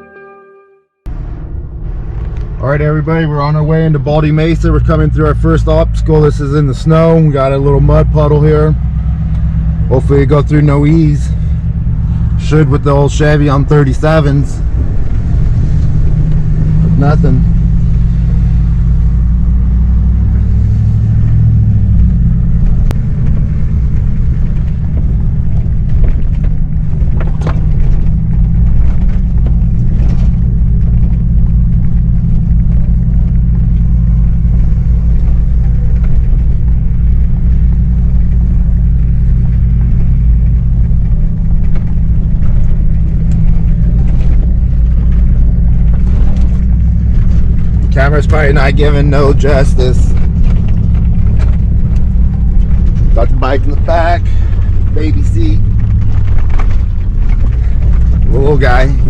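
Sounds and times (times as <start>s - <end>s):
truck engine low drone: 0.0s - 59.0s
knocks and rattles from bumps: 23.2s - 33.1s.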